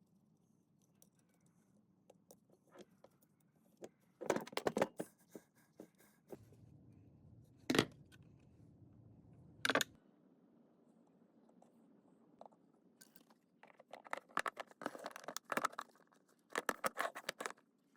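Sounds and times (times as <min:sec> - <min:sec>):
low steady hum: 0:03.0 - 0:16.0
parts clicking and clattering: 0:13.0 - 0:17.6.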